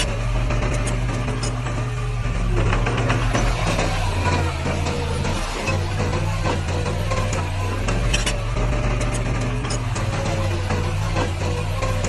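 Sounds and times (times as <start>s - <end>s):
heavy machinery diesel engine: 0.0s - 12.0s
high metallic squeaks and clinks: 8.0s - 10.2s.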